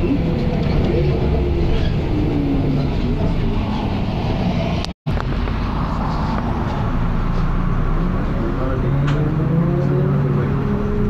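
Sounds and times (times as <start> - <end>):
diesel bus engine running: 0.0 - 9.2.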